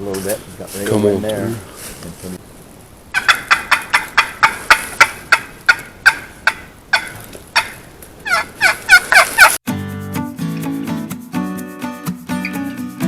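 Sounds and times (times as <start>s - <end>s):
wild turkey yelping: 3.1s - 9.6s.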